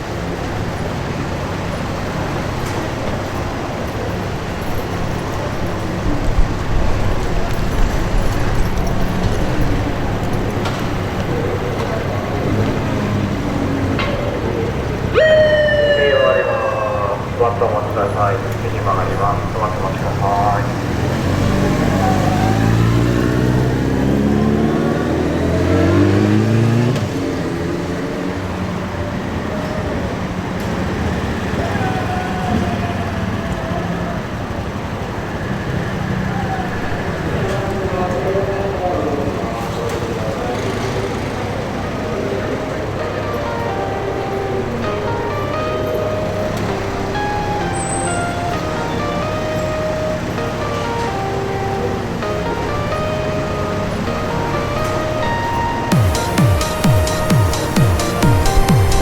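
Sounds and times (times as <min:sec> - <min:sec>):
road noise: 0:00.0 - 0:59.0
vehicle engines and tyres: 0:00.0 - 0:59.0.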